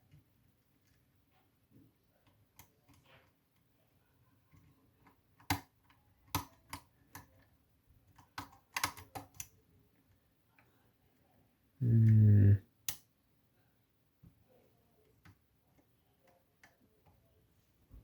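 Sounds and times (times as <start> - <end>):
lock pick clicking on pins: 8.1 - 9.5.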